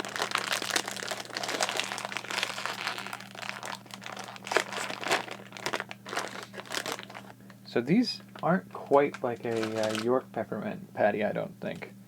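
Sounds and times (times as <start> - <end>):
candy wrapper crinkling: 0.0 - 7.5, 8.4 - 10.1.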